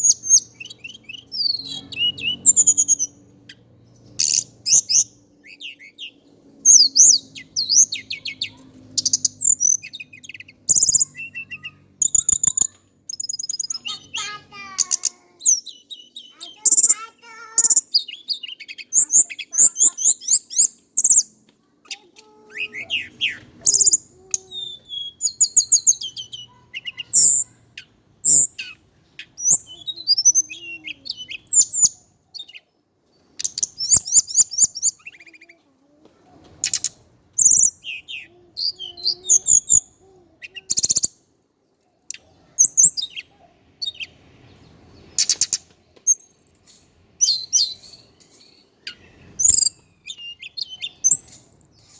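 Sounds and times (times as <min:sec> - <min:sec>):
bird twittering song: 0:00.0 - 0:35.7, 0:36.6 - 0:41.2, 0:42.0 - 0:51.9
sharp clicks: 0:36.5 - 0:37.0.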